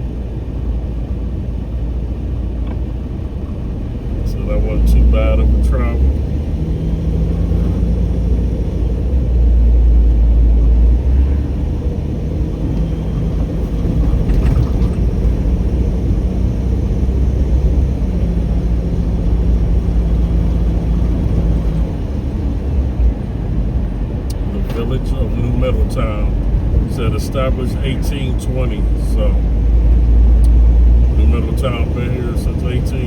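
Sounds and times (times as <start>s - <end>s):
car tyres and engine rumble: 0.0s - 33.0s.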